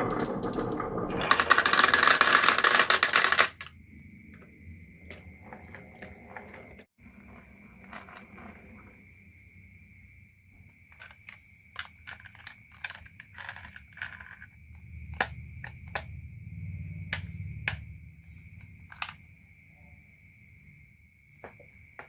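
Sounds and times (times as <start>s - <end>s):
low rolling rumble: 0.0s - 1.6s
marbles clacking on wooden run: 0.0s - 3.8s, 10.9s - 16.1s, 18.9s - 19.2s.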